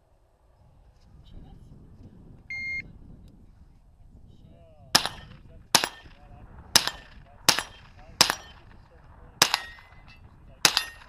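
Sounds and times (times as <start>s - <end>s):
shot timer beep: 2.5s - 2.8s
pistol shots: 5.0s - 11.0s.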